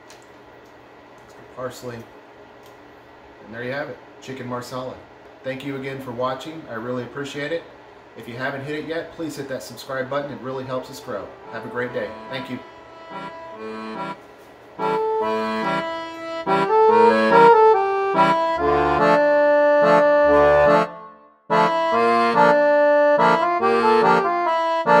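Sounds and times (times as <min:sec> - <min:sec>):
instrumental music: 0:10.7 - 0:25.0.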